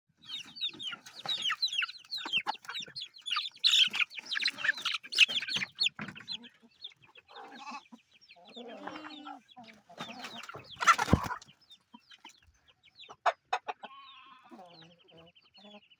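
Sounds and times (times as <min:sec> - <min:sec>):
chickens clucking: 0:00.1 - 0:15.9.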